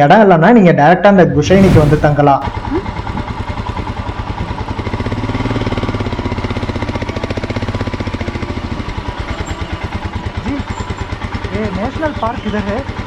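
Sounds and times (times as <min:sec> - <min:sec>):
motorcycle engine running: 0:04.4 - 0:13.0.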